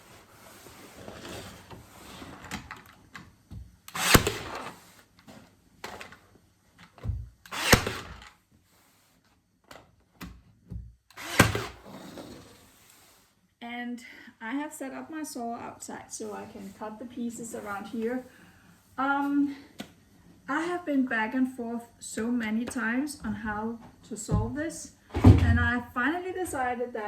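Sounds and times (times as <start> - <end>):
power tool bursts with sharp snap: 3.9 - 4.8, 7.4 - 8.4, 11.1 - 11.8.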